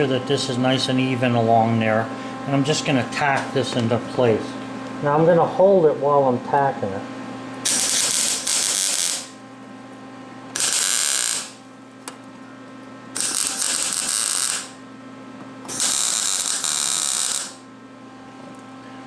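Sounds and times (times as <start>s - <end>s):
arc welder crackling: 7.6s - 9.4s, 10.5s - 14.8s, 15.6s - 17.7s
welder hum: 7.6s - 9.4s, 10.5s - 12.2s, 13.1s - 14.9s, 15.6s - 17.8s.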